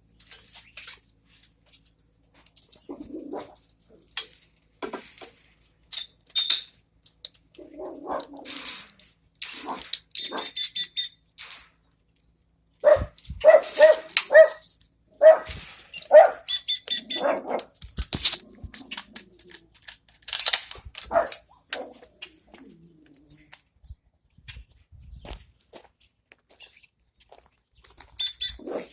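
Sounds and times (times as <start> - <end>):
bird high rapid chirping: 9.6 - 11.2, 15.9 - 17.4, 28.2 - 28.7
dog barking in short yaps: 12.8 - 14.6, 15.2 - 16.5, 17.1 - 17.6.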